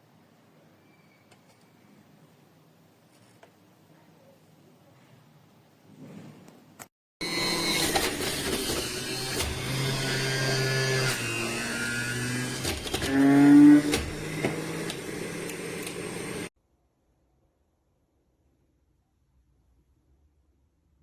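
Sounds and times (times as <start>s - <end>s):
electric juicer motor humming: 7.2s - 16.5s.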